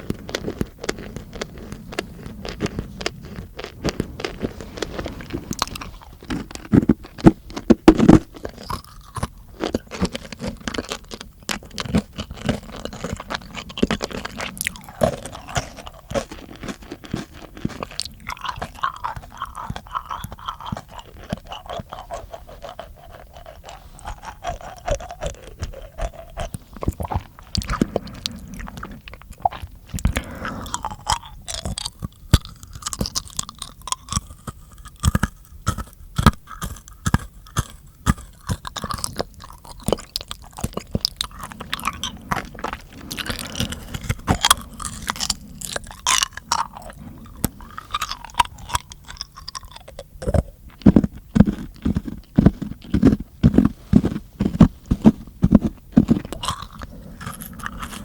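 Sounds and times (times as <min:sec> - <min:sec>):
wet mouth clicks and smacks: 0:05.3 - 0:58.0.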